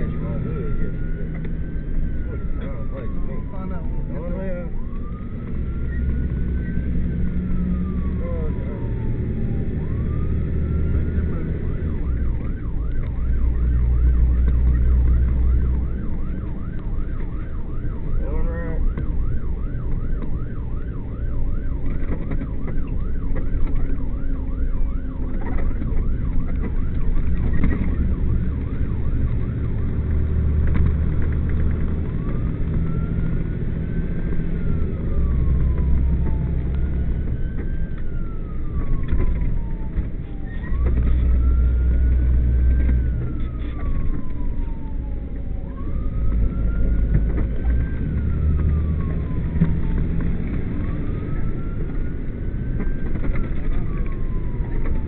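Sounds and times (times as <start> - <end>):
engine and road rumble: 0.0 - 55.0
fire truck siren: 0.0 - 55.0.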